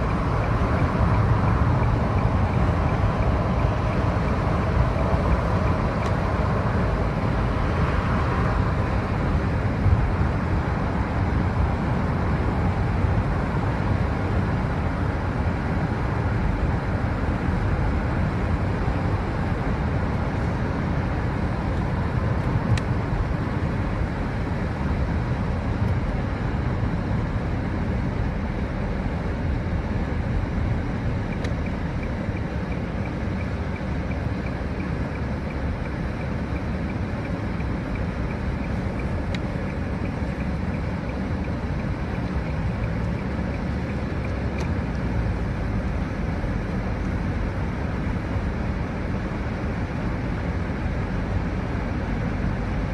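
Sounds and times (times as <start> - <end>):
tyre and engine rumble: 0.0 - 52.9.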